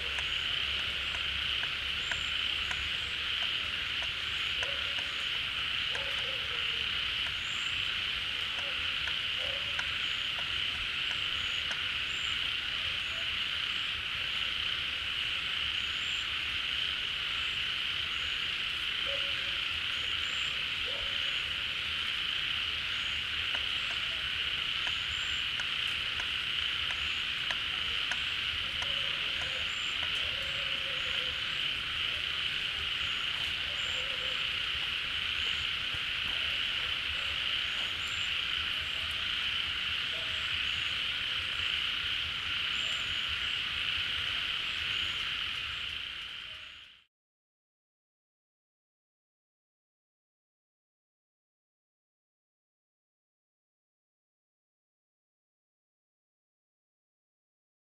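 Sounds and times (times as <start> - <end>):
low frog croaks: 0.0 - 47.0
frogs trilling: 0.0 - 47.1.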